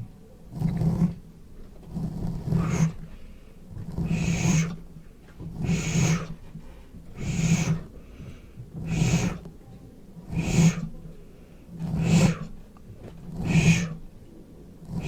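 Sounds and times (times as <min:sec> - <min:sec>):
slow rhythmic breathing: 0:00.0 - 0:15.0.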